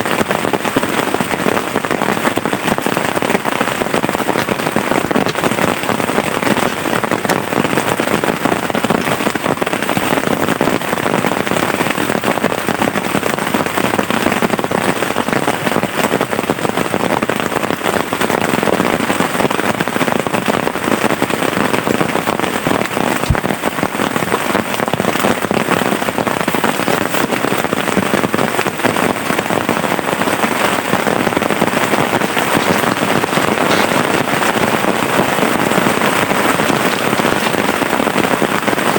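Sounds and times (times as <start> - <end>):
heavy rain falling: 0.0 - 38.9.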